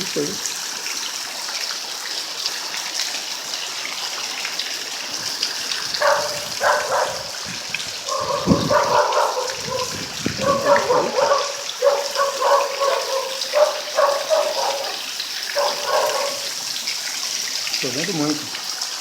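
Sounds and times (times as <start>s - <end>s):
heavy rain falling: 0.0s - 19.0s.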